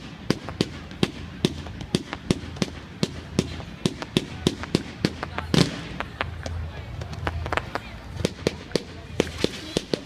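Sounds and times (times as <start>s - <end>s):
fireworks bangs: 0.0s - 10.0s.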